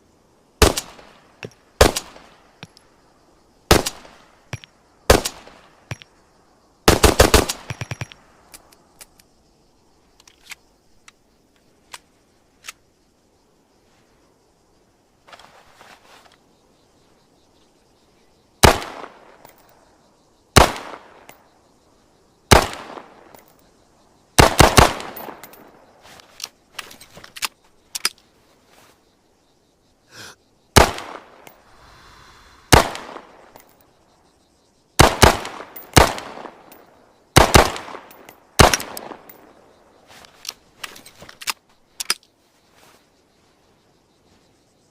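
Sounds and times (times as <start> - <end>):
pistol shots: 18.6 - 19.2, 20.6 - 21.1, 22.5 - 23.1, 24.4 - 25.4, 30.8 - 31.4, 32.7 - 33.4, 35.0 - 36.7, 37.4 - 39.3.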